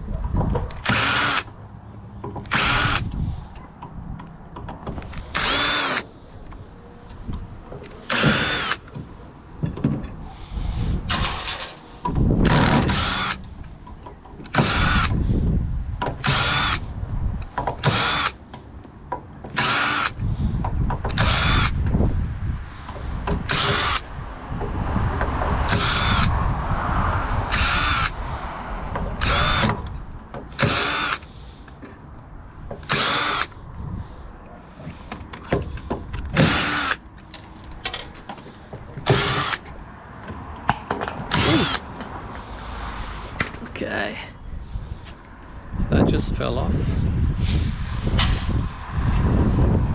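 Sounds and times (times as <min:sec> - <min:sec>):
power drill bursts: 0:00.8 - 0:01.5, 0:02.5 - 0:03.1, 0:05.3 - 0:06.1, 0:08.0 - 0:08.9, 0:12.4 - 0:13.4, 0:14.5 - 0:15.1, 0:16.2 - 0:16.8, 0:17.8 - 0:18.4, 0:19.6 - 0:20.2, 0:21.2 - 0:21.7, 0:23.5 - 0:24.0, 0:25.7 - 0:26.3, 0:27.5 - 0:28.2, 0:29.2 - 0:29.8, 0:30.6 - 0:31.3, 0:32.8 - 0:33.5, 0:36.3 - 0:37.0, 0:39.0 - 0:39.7, 0:41.3 - 0:41.9.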